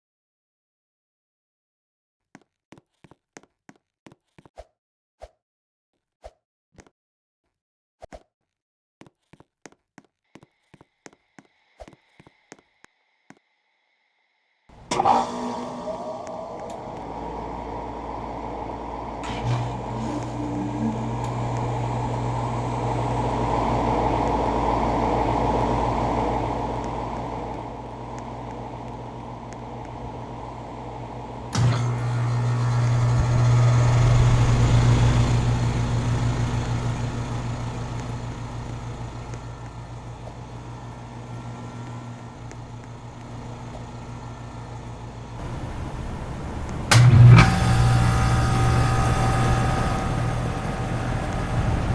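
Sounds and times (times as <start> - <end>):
air conditioner click: 45.4 - 51.9
air conditioner humming: 45.4 - 51.9.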